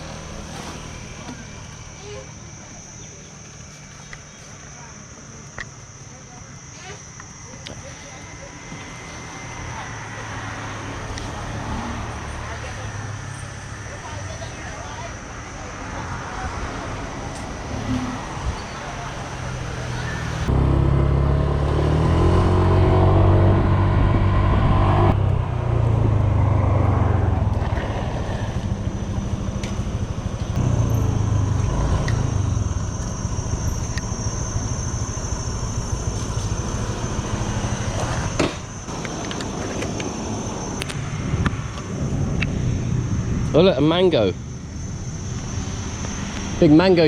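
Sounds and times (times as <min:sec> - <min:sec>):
motor scooter engine running: 0:25.5 - 0:40.9.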